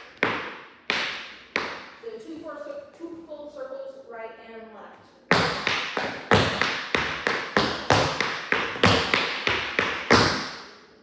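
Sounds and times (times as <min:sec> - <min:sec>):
shoes striking hard floor: 0:05.3 - 0:10.6.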